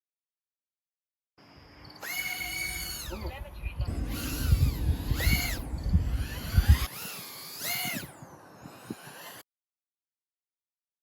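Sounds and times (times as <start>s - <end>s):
drone motors whining: 1.9s - 9.4s
low thumps and rumble: 2.9s - 7.0s.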